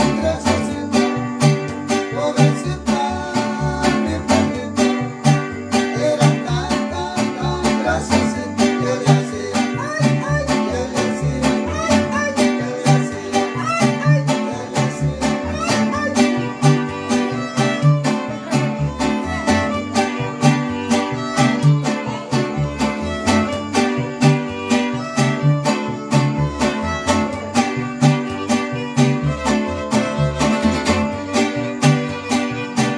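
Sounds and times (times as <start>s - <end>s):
plucked string instruments: 0.0s - 32.9s.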